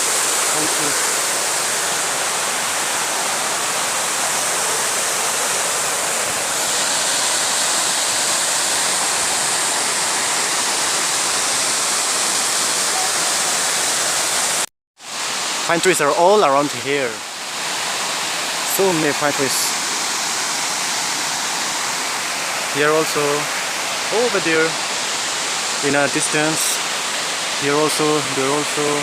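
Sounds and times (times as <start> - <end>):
waterfall rushing: 0.0 - 29.0.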